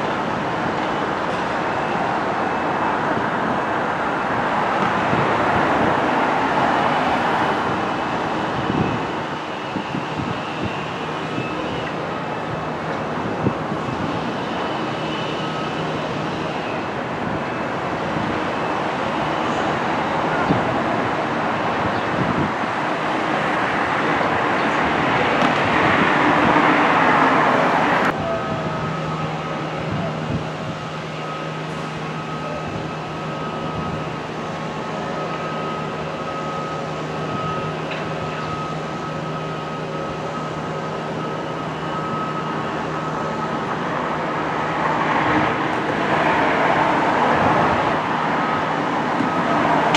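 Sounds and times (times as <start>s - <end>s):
crowd voices and movement: 0.0s - 49.9s.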